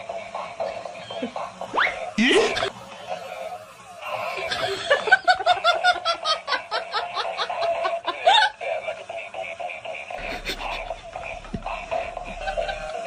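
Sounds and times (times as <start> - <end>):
laughter: 4.1 - 13.0.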